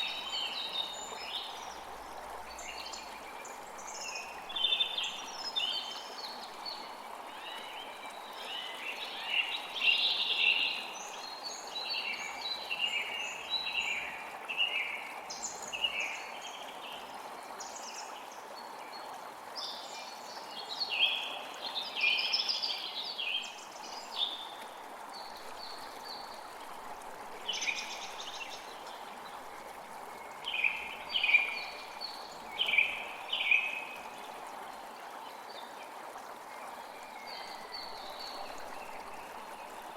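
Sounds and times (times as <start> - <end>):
creek flowing: 0.0 - 39.9
songbirds singing: 30.1 - 34.4.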